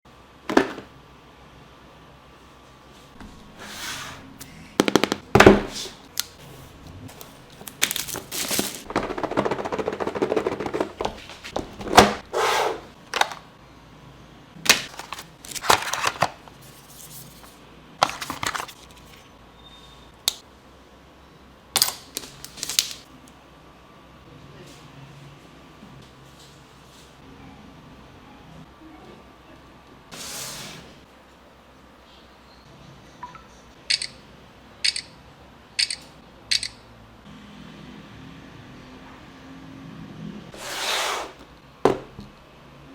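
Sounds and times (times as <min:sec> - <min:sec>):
packaging rustling: 0:07.2 - 0:12.2, 0:14.7 - 0:17.4.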